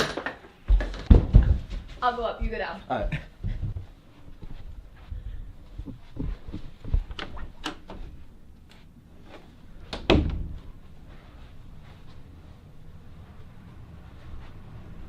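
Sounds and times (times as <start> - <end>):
door slamming shut: 10.0 - 10.6.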